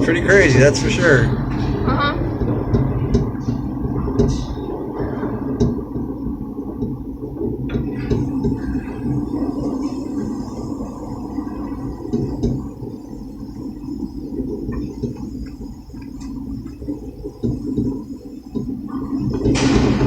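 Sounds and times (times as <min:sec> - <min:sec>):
tram capsule rumbling: 0:00.0 - 0:20.0.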